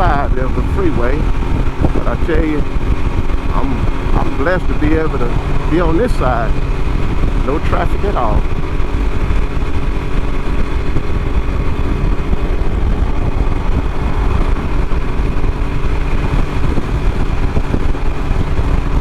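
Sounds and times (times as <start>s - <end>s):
motorcycle engine rumbling: 0.0s - 19.0s.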